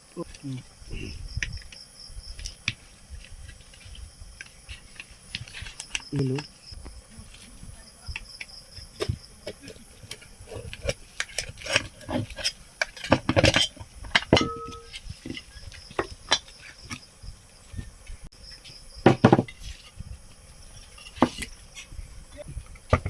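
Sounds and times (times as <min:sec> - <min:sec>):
tools knocking on metal: 0:13.1 - 0:15.0
metal part ringing: 0:13.5 - 0:15.0.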